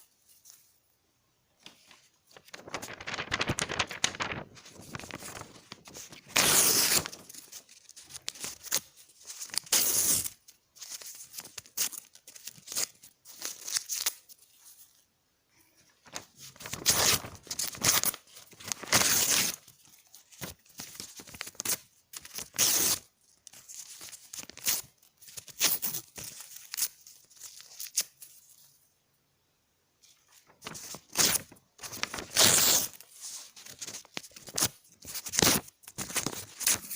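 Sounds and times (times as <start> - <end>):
paper crinkling and rustling: 1.6 - 15.0, 15.9 - 28.8, 30.0 - 36.9
paper tearing: 6.1 - 10.4, 16.6 - 19.7, 21.2 - 23.1, 30.6 - 33.0.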